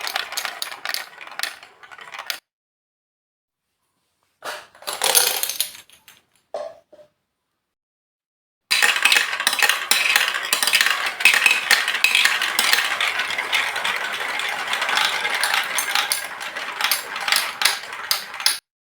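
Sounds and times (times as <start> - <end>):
marbles rattling down plastic track: 0.0 - 2.4, 4.9 - 5.9, 8.7 - 18.6.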